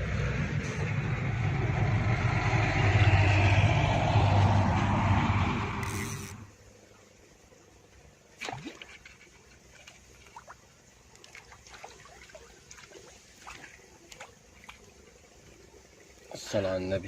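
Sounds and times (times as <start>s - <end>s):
water splashing and trickling: 7.2s - 17.0s.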